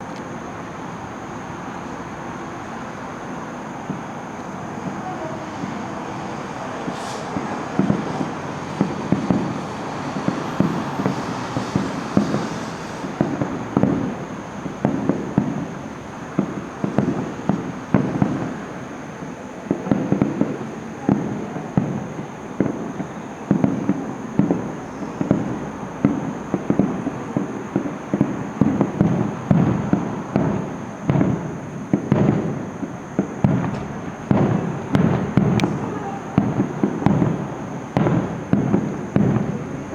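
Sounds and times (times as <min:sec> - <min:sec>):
fireworks booming: 0:00.0 - 0:39.9
steady background noise: 0:00.0 - 0:39.9.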